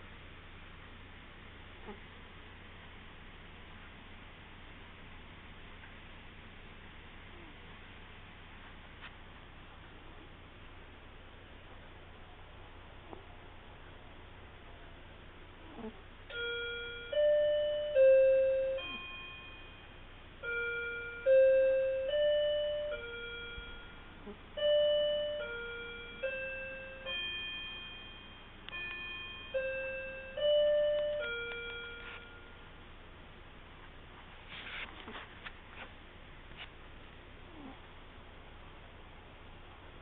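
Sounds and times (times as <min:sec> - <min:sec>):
chime tune: 0:16.3 - 0:32.7.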